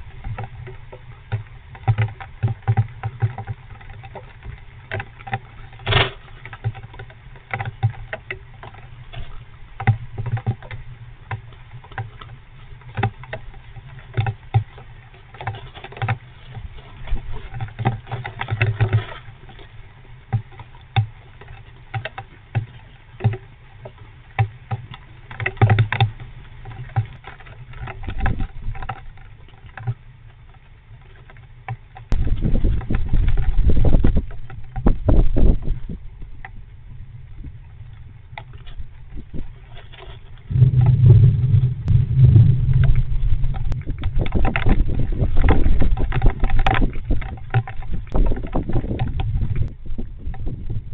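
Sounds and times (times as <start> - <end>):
low thumping: 32.1 - 50.9.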